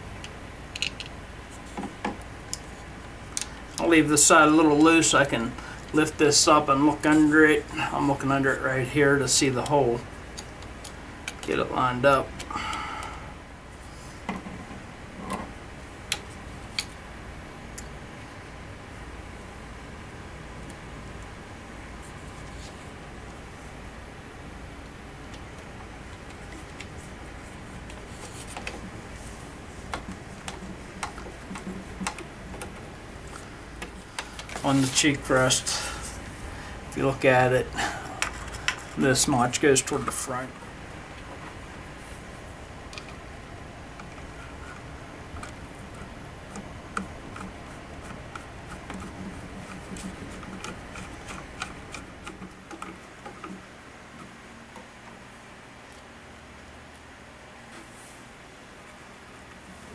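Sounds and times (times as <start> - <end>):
steady low hum: 0.0 - 59.9
screwdriver clicking on plastic: 29.9 - 32.8.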